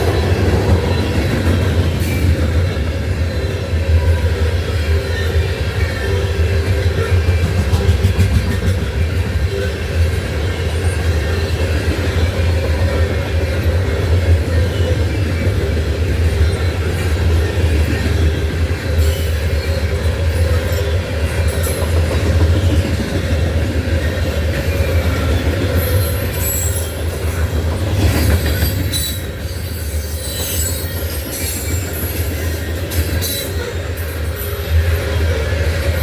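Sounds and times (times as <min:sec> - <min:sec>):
train cars rumbling past: 0:00.0 - 0:36.0
high-pitched wheel squeal: 0:28.6 - 0:32.5.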